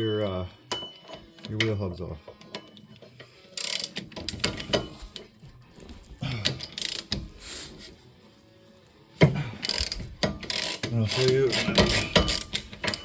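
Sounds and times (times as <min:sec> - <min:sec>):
socket ratchet clicking: 0:03.5 - 0:04.9, 0:06.5 - 0:07.3, 0:09.6 - 0:13.0.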